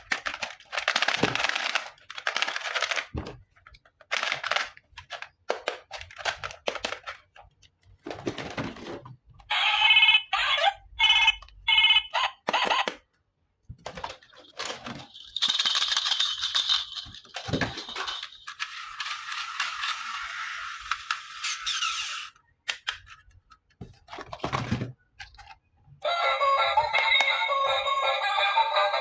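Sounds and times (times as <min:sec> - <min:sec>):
plastic toy pieces clicking: 0:00.0 - 0:07.6, 0:13.8 - 0:23.6.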